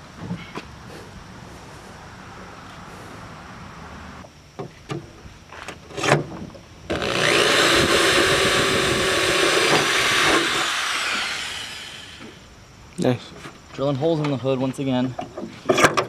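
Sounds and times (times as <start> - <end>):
power drill cutting sheet metal: 6.9 - 12.5.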